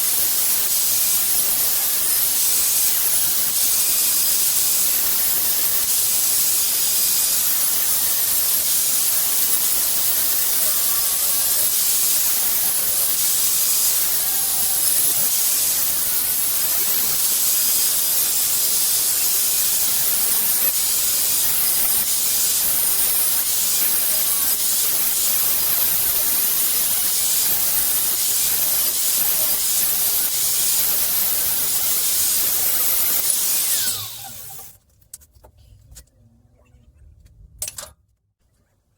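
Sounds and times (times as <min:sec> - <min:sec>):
metal-cutting tool hissing: 0:00.0 - 0:34.8.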